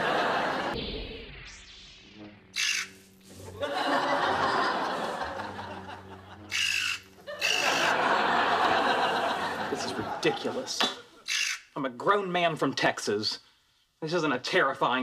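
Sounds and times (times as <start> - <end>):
studio audience laughing: 0.0 - 0.8, 3.4 - 6.6, 7.2 - 11.2
short harsh high bursts: 1.2 - 3.5.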